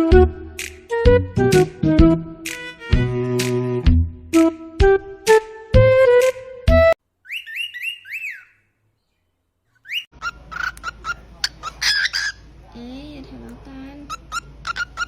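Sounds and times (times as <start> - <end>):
cockatiel chirping and whistling: 7.2 - 8.7, 9.8 - 12.4, 14.1 - 15.0.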